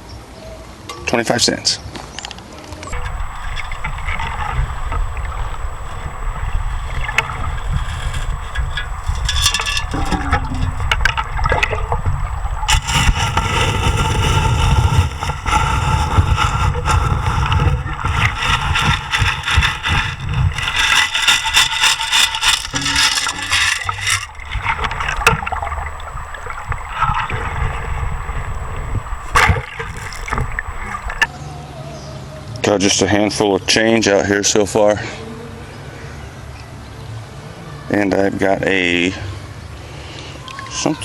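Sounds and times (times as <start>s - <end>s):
river water sloshing: 3.0s - 31.3s
scoop scraping gravel: 3.0s - 31.3s.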